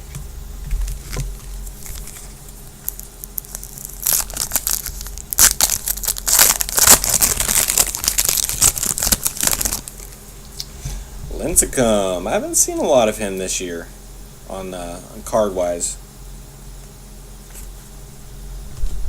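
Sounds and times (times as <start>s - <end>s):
foil wrapper crinkling and tearing: 0.8s - 10.2s.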